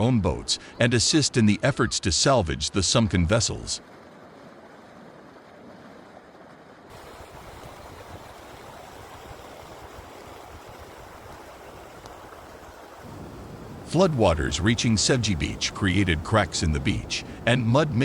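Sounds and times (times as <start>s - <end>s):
floodwater rushing: 0.0s - 18.0s.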